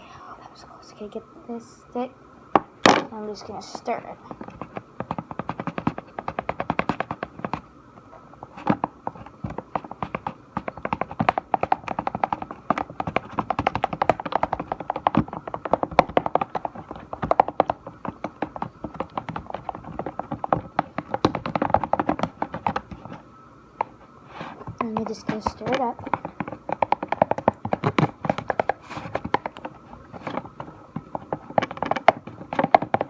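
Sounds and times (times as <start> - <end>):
stick tapping against container: 24.7 - 33.0.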